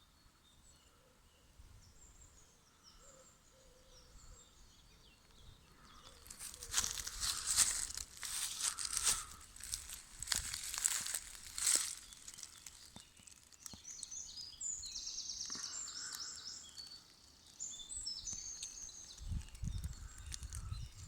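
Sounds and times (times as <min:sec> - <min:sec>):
woodland birdsong: 0:00.0 - 0:21.0
crackling rustle: 0:05.2 - 0:21.0.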